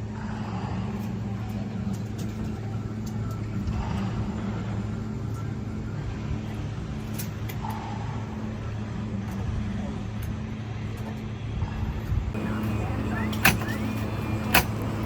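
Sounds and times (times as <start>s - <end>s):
low mechanical drone: 0.0s - 15.0s.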